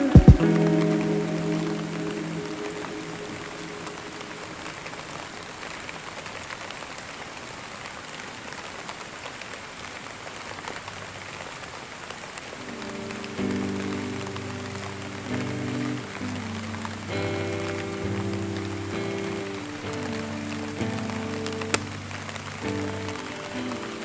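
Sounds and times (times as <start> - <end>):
soft music: 0.0 - 5.0, 12.6 - 24.0
steady rain falling: 0.0 - 24.0
raindrop ticks: 10.3 - 24.0.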